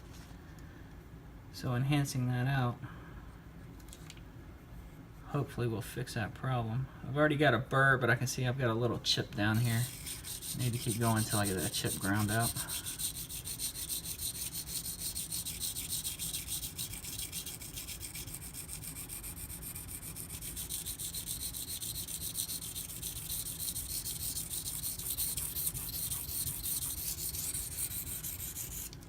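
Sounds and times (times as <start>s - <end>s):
knife scraping on water stone: 9.6s - 29.0s.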